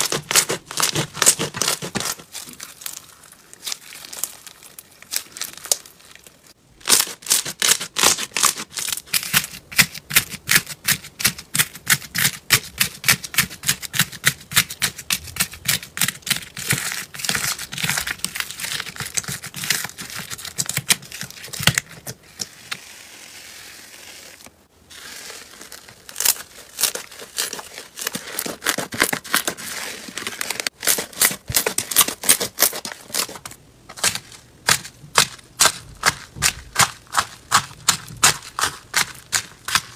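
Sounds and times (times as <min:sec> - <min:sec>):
slime crackling and popping: 0:00.1 - 0:09.9.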